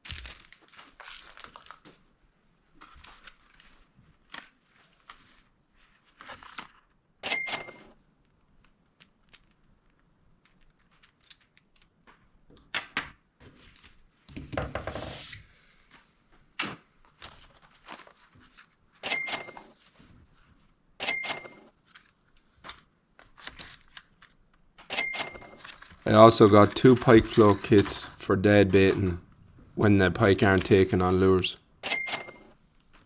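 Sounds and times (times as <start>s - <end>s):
packaging crackling: 0.0s - 1.9s
sharp clicks with ringing tone: 31.8s - 32.5s.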